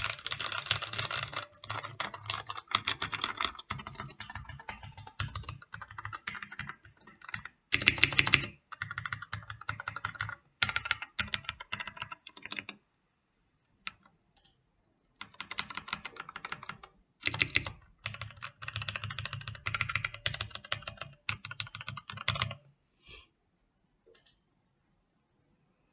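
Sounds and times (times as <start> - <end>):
mechanical keyboard typing: 0.0 - 12.8, 15.2 - 22.7.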